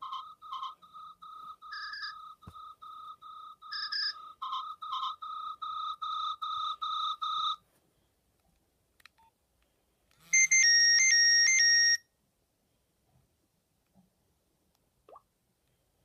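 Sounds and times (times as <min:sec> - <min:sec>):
electronic ringtone melody: 0:00.0 - 0:07.6, 0:10.3 - 0:12.0
repeated ringtone beeps: 0:00.0 - 0:07.6, 0:10.3 - 0:12.0.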